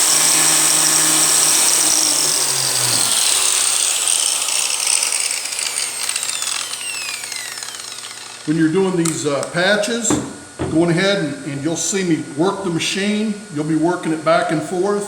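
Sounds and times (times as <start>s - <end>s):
electric grinder whining: 0.0s - 9.6s.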